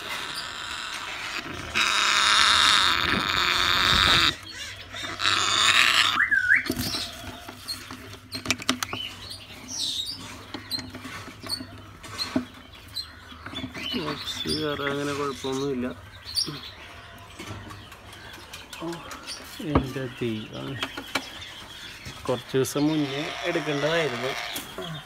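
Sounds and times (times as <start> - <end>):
parrots making raspy hissing calls: 0.0 - 6.2.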